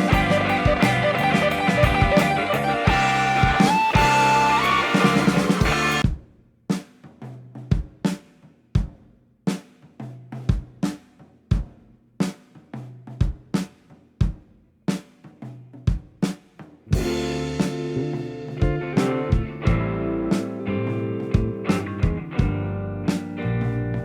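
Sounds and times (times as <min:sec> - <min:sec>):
bass line: 0:00.0 - 0:06.0, 0:17.0 - 0:24.0
guitar chords: 0:00.0 - 0:06.0, 0:17.0 - 0:24.0
drum kit beat: 0:00.0 - 0:24.0.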